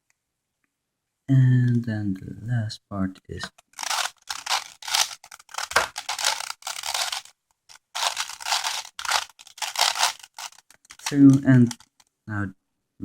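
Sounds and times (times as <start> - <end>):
puzzle cube clicking turns: 3.4 - 12.1.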